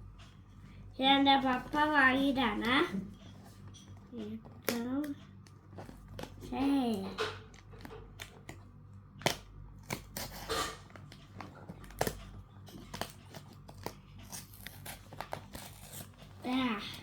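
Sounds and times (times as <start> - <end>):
packaging tearing: 9.3 - 10.9, 11.8 - 16.3
packaging crinkling: 9.3 - 16.4.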